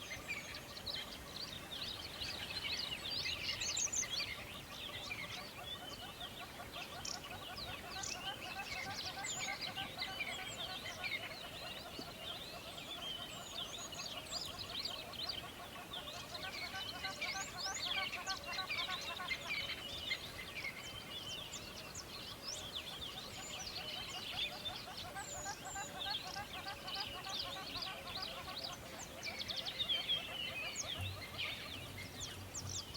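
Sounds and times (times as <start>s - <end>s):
small birds chirping and twittering: 0.0s - 32.9s
birds chirping and whistling: 29.2s - 32.9s.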